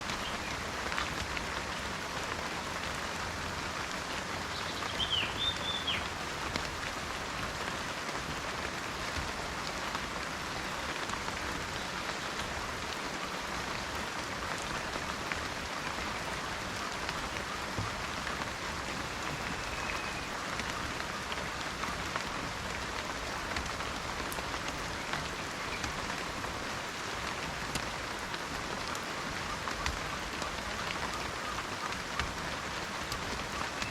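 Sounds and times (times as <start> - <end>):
steady rain falling: 0.0 - 33.9
bird chirping: 4.5 - 6.1.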